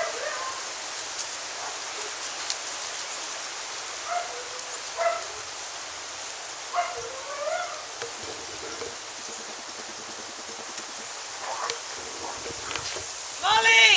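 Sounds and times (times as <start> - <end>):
wind hiss on microphone: 0.0 - 13.9
small dog yapping: 6.8 - 7.9.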